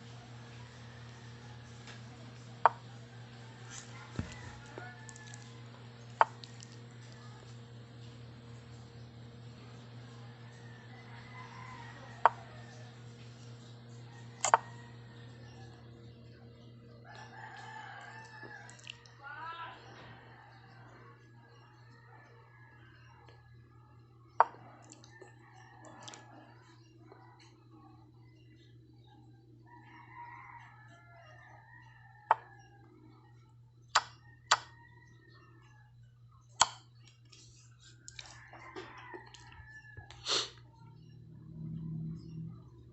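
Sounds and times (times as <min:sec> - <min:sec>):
low hum: 0:32.1 - 0:42.9.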